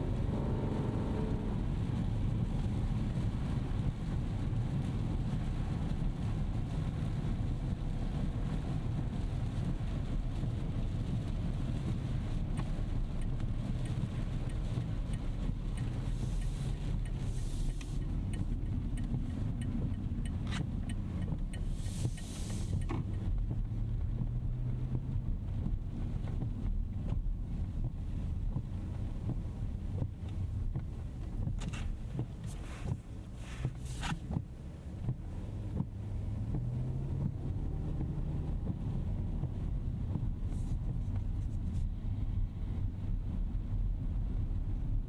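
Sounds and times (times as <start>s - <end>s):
car road rumble: 0.0s - 45.0s
water spray hissing: 15.8s - 19.1s, 21.5s - 22.9s.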